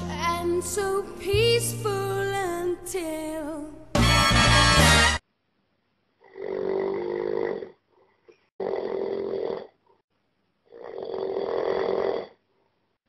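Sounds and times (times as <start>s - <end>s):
man snoring: 6.2s - 7.8s, 8.6s - 9.9s, 10.7s - 12.4s.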